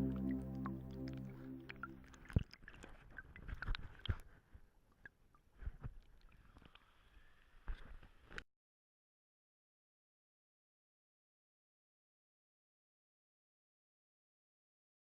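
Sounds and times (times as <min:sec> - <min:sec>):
background music: 0:00.0 - 0:02.0
low hiss: 0:00.0 - 0:02.1.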